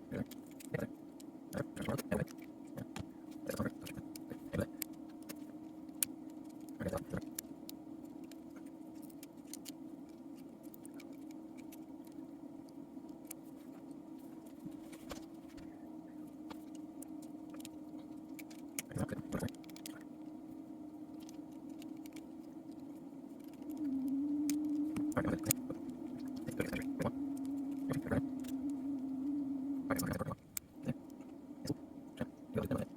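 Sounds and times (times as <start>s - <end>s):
steady low hum: 0.0s - 32.9s.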